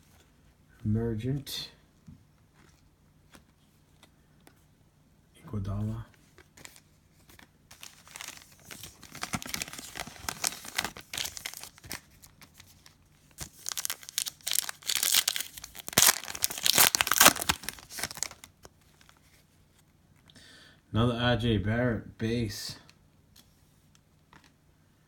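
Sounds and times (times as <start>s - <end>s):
plastic wrapper crinkling: 6.3s - 19.2s.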